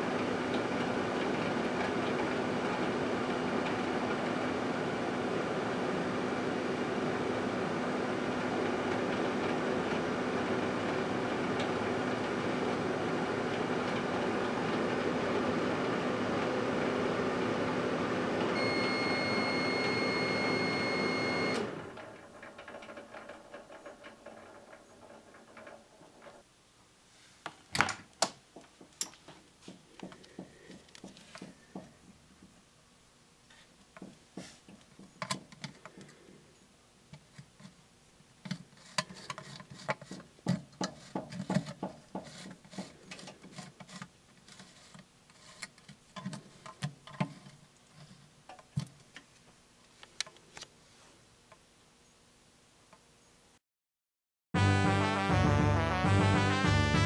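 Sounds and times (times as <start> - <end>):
microwave oven humming: 0.0 - 25.9.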